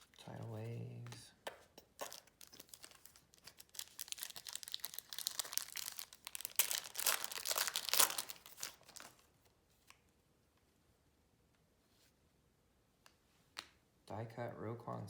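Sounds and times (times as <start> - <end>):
wrapper tearing and crinkling: 2.0 - 9.3.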